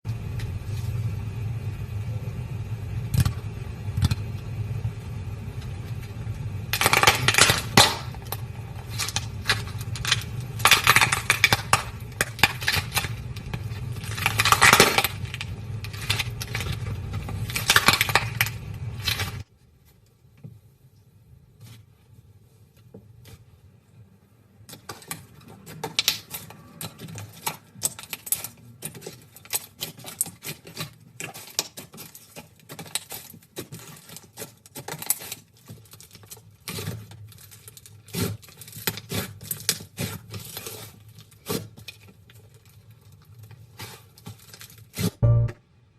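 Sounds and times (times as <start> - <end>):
low hum: 0.0 - 19.4, 45.2 - 45.9.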